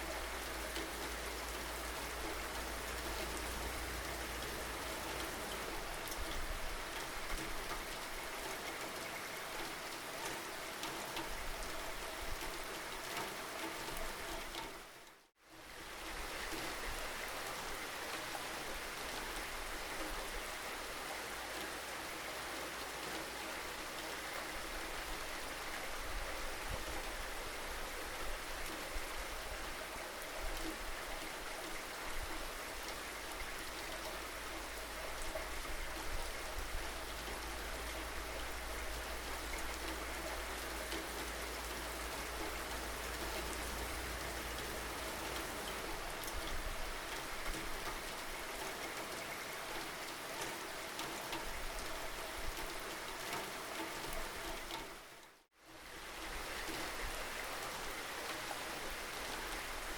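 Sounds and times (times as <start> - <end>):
steady rainfall: 0.0 - 59.9.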